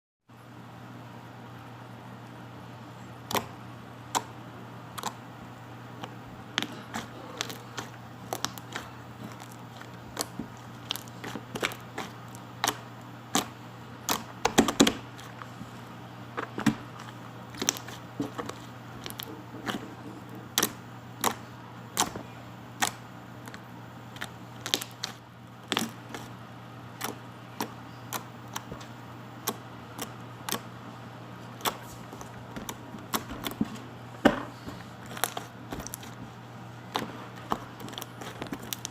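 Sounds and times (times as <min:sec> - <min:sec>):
low electrical hum: 0:00.3 - 0:38.9
slime clicking and popping: 0:06.0 - 0:15.3, 0:16.6 - 0:19.8, 0:20.6 - 0:21.4, 0:24.2 - 0:26.3, 0:27.0 - 0:30.7.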